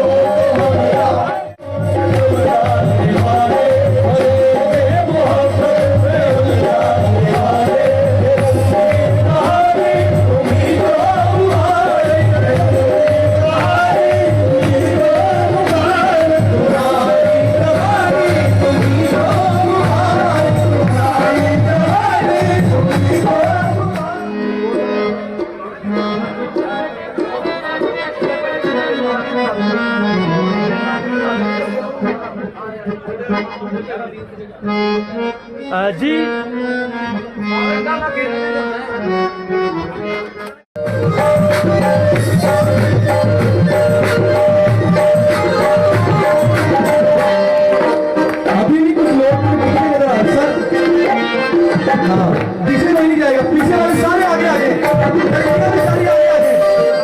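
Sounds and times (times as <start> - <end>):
harmonium melody: 0.0 - 57.0
tabla playing: 0.0 - 57.0
live band music: 4.0 - 57.0.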